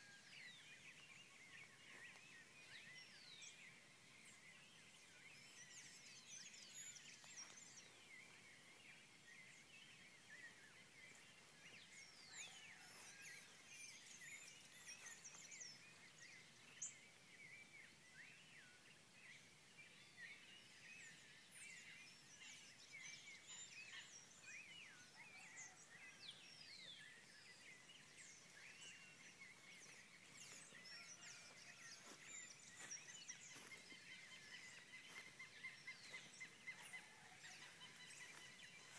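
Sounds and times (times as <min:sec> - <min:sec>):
birds chirping and whistling: 0:28.2 - 0:38.9.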